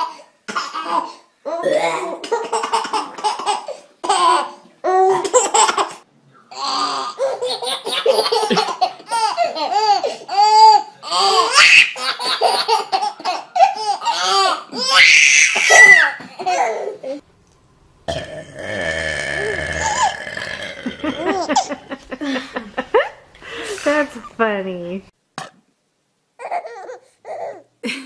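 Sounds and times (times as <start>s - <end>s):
baby laughing: 0.0s - 17.2s, 21.1s - 22.1s, 26.4s - 28.0s.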